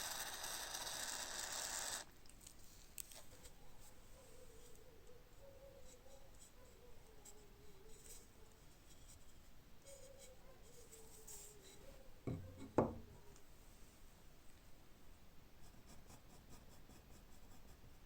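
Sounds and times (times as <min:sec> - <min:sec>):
faint scratching on wood: 0:05.6 - 0:12.1
knocks: 0:12.3 - 0:13.0.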